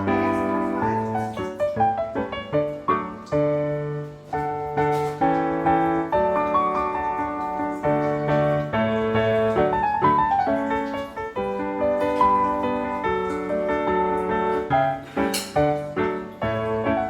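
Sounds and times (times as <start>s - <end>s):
slow piano music: 0.0s - 17.0s.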